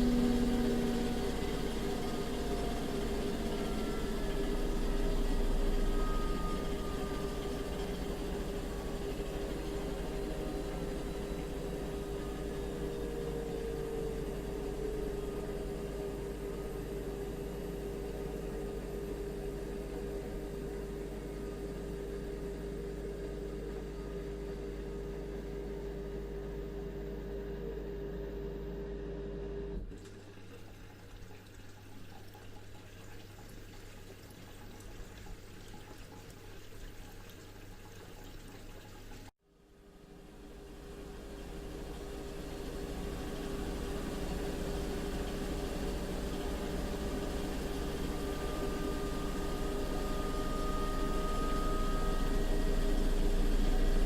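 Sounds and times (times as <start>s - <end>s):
washing machine spinning: 0.0s - 54.0s.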